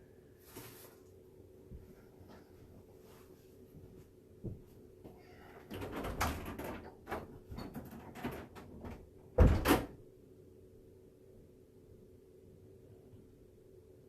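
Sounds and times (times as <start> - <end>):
low steady hum: 0.0 - 14.0
clattering knocks and rustling: 5.6 - 9.9.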